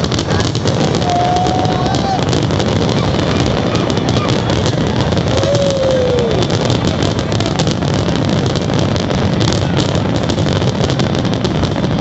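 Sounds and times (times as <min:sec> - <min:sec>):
fireworks crackling: 0:00.0 - 0:12.0.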